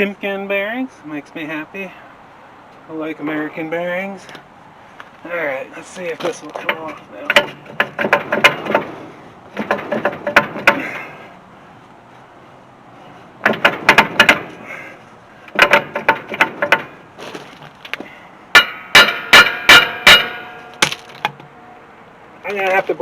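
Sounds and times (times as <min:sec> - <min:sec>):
metal striking brake drum: 0:06.6 - 0:08.9, 0:15.5 - 0:17.0, 0:18.5 - 0:21.5.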